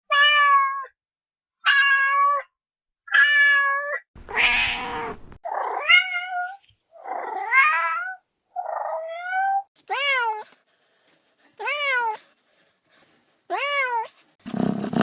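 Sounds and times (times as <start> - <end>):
kitten meowing: 3.1 - 6.6.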